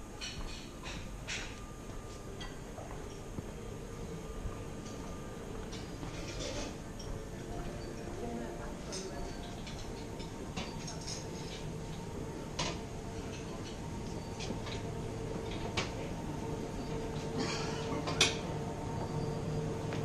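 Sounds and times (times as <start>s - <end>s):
steady low hum: 0.0s - 20.0s
clinks of dishes and cutlery: 0.2s - 1.6s, 2.4s - 3.2s, 5.7s - 11.7s
faint background voices: 6.0s - 15.0s.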